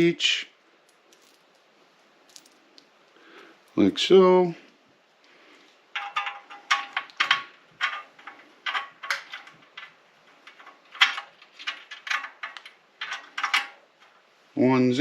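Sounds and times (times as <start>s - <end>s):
metal bolts clinking on metal: 6.0s - 14.2s.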